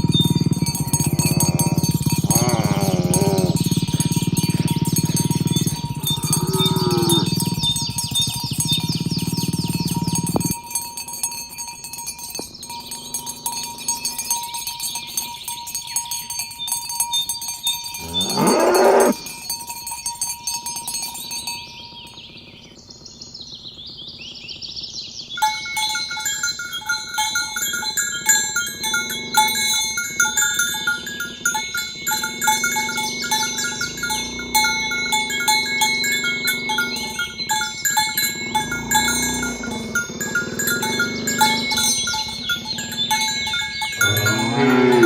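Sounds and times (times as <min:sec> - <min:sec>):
cow mooing: 0:00.0 - 0:07.9, 0:18.0 - 0:19.3, 0:28.5 - 0:45.0
high-pitched tinkling and chirping: 0:00.0 - 0:45.0.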